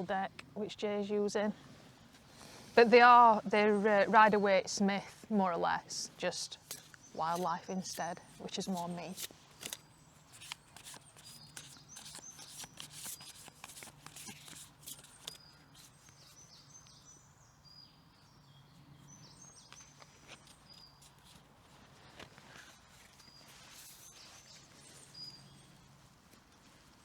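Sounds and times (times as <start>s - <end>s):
small birds chirping: 0.0s - 26.1s
faint woodland ambience: 0.0s - 27.0s
handling clicks and rustles: 6.2s - 16.3s.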